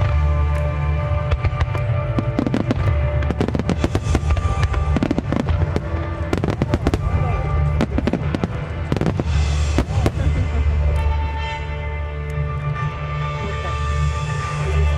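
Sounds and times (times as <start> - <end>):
rumble of fireworks booms: 0.0 - 10.9
fireworks cracking and crackling: 0.0 - 11.2
music with sustained tones: 0.0 - 14.9.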